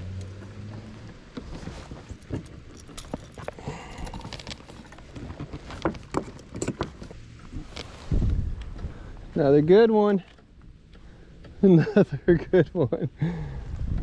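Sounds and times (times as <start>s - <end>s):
fishing gear clicking and rattling: 0.0s - 8.1s.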